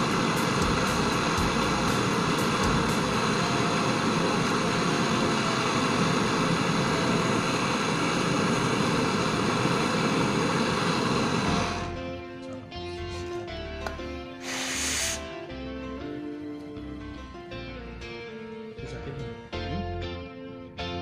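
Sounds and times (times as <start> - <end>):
gas torch flame roaring: 0.0 - 12.0, 14.4 - 15.4.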